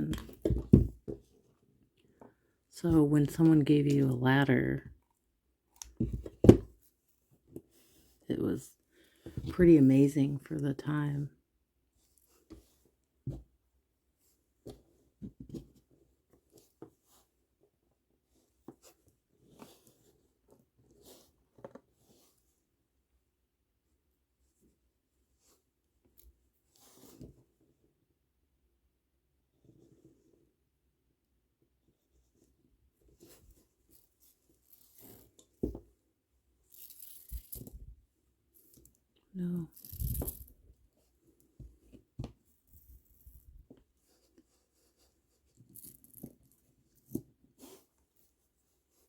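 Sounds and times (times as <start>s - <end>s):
plastic beads rustling: 36.7s - 37.8s, 39.6s - 40.6s.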